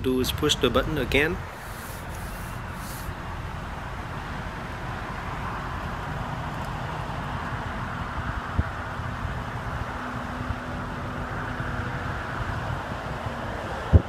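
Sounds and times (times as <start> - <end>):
vehicle rumble and hiss: 0.0 - 14.0.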